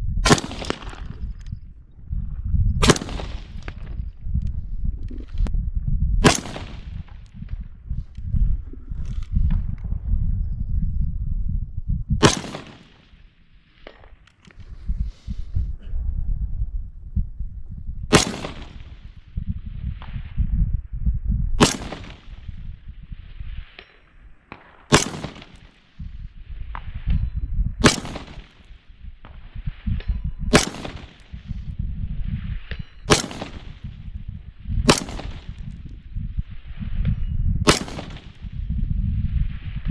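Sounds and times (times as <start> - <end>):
low rumble: 0.0 - 12.8, 14.6 - 23.7
rifle shots with echo: 0.2 - 1.3, 2.8 - 3.9, 6.2 - 7.3, 12.2 - 14.2, 18.1 - 19.2, 21.6 - 22.6, 24.5 - 26.0, 27.8 - 29.4, 30.5 - 31.6, 33.1 - 34.1, 34.8 - 35.8, 37.6 - 38.5.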